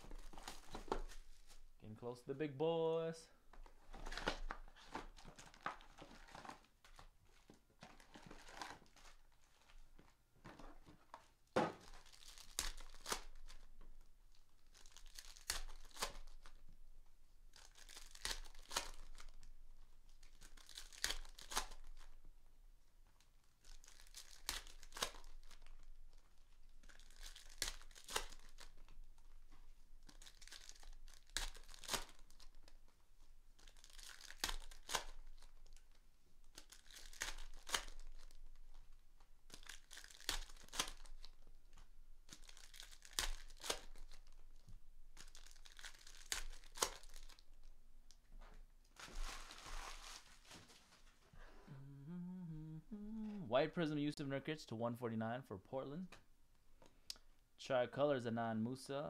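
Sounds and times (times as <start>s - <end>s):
wrappers crinkling: 3.6s - 10.2s, 11.1s - 16.7s, 17.5s - 22.2s, 23.0s - 48.2s, 48.8s - 51.2s
card packs tearing open: 3.8s - 7.0s, 7.8s - 9.2s, 11.8s - 13.7s, 14.6s - 16.6s, 17.5s - 19.5s, 20.1s - 22.2s, 23.5s - 29.0s, 30.0s - 32.7s, 33.6s - 41.4s, 42.3s - 44.6s, 45.2s - 47.5s, 49.0s - 50.8s.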